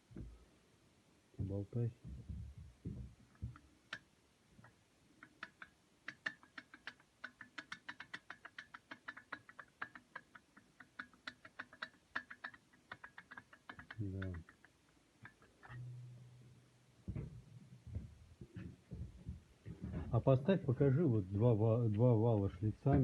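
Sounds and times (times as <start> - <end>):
clutch disc hub clicking on shaft: 5.2 - 14.6.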